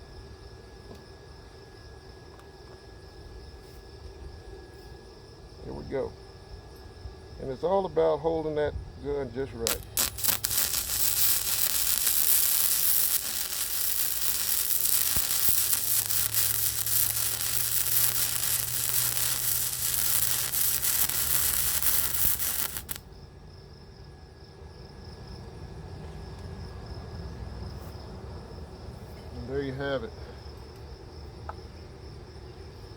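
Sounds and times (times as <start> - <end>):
welding arc crackling: 9.7 - 23.0.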